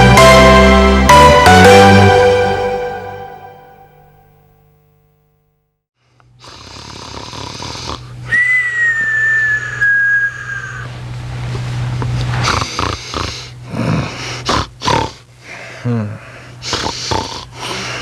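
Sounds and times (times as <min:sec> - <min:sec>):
short snorts: 0:06.4 - 0:08.2, 0:12.4 - 0:18.0
person snoring with whistle: 0:12.4 - 0:15.2.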